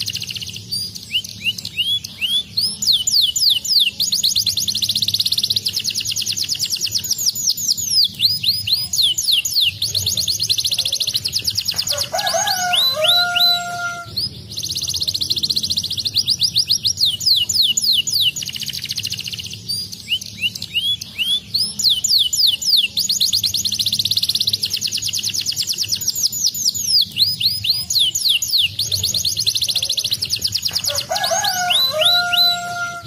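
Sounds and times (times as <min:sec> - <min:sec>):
canary singing trills: 0:00.0 - 0:33.0.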